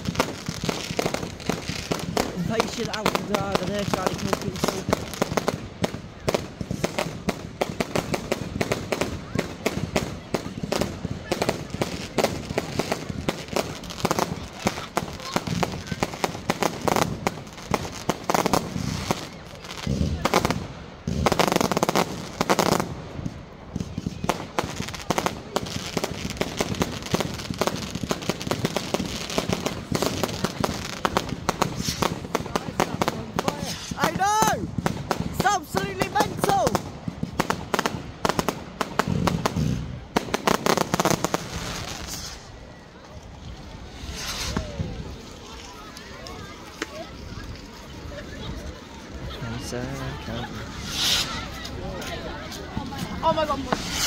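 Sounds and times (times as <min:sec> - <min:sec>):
fireworks bangs and crackles: 0:00.0 - 0:54.0
deep firework boom: 0:18.5 - 0:24.4, 0:36.9 - 0:42.2.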